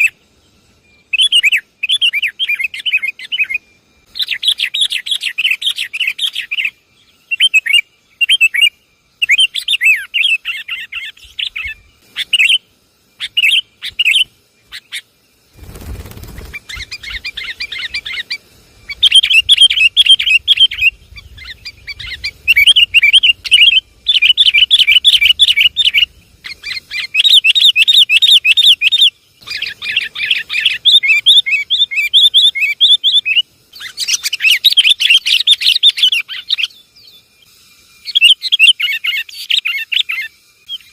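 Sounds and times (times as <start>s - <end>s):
bird chattering calls: 9.2s - 36.7s.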